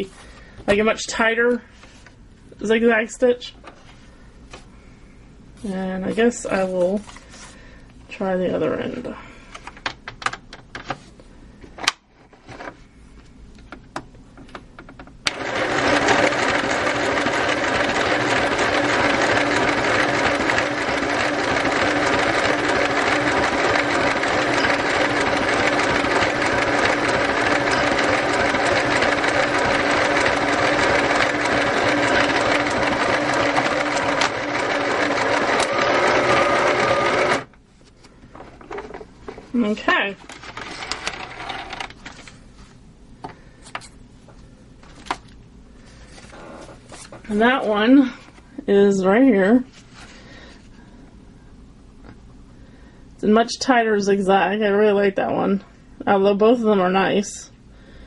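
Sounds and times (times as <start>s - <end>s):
sewing machine stitching: 15.3s - 37.5s, 40.4s - 41.9s.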